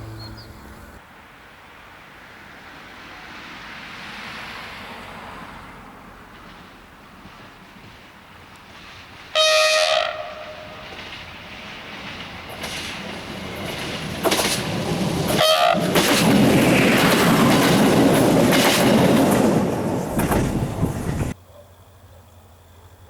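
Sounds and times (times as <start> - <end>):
train rumble: 0.0 - 1.0, 4.8 - 21.4
train wheels clacking over rail joints: 6.2 - 21.4.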